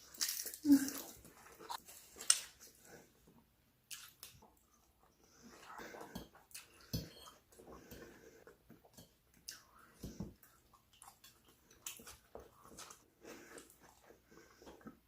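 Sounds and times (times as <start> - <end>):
chewing with clicks and smacks: 3.9 - 15.0.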